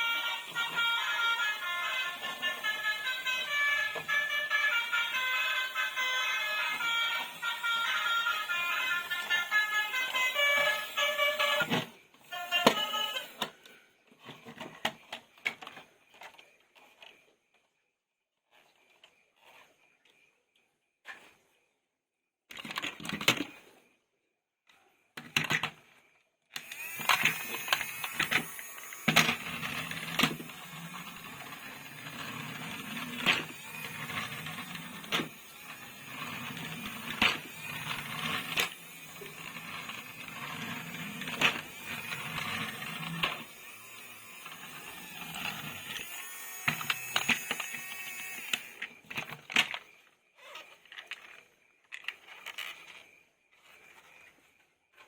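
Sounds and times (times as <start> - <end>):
plastic clicks and rattles: 22.5 - 23.5, 25.2 - 25.8, 48.4 - 49.9.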